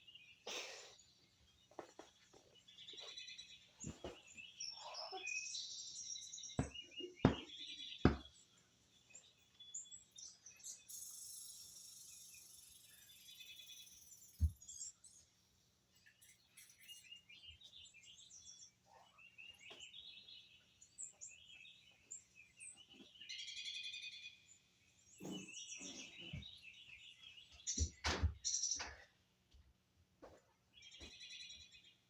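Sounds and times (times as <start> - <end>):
small birds chirping: 0.0 - 32.0
dull thumps: 6.6 - 8.3.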